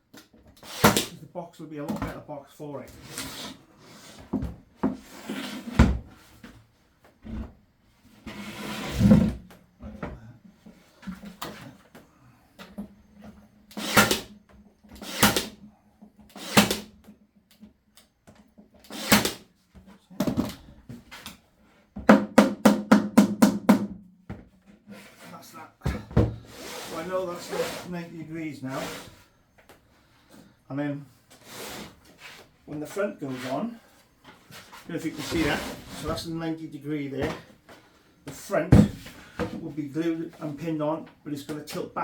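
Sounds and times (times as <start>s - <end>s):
hammer nailing into wood: 13.8s - 14.3s, 15.1s - 15.5s, 16.4s - 16.9s, 18.9s - 19.4s, 22.1s - 24.0s.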